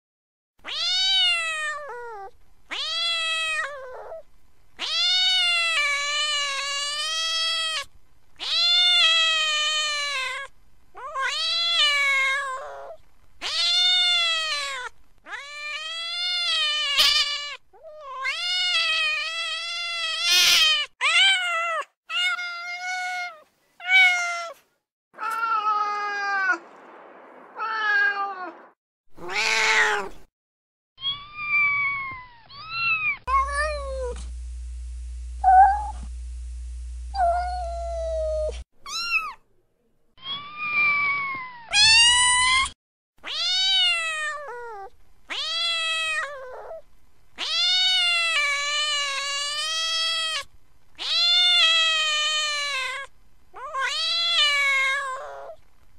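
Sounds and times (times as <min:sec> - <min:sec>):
cat meowing: 0:00.6 - 0:04.2, 0:04.8 - 0:24.6, 0:29.2 - 0:30.2, 0:40.2 - 0:46.8, 0:47.4 - 0:55.6.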